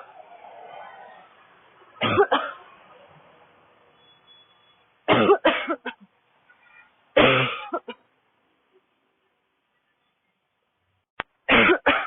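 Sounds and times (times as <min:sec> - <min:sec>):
woman coughing: 0:02.0 - 0:02.6, 0:05.1 - 0:06.0, 0:07.2 - 0:08.0, 0:11.5 - 0:12.0.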